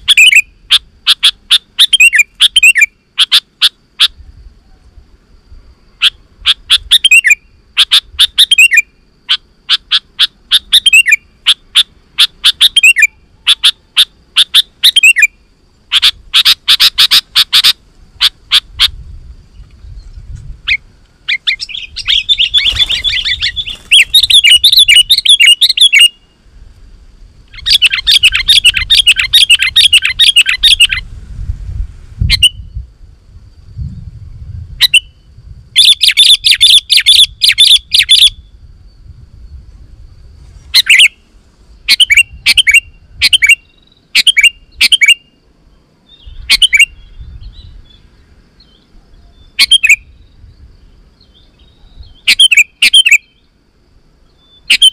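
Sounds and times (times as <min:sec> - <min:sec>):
bulbul singing and chattering: 0:20.7 - 0:26.2, 0:27.5 - 0:31.0.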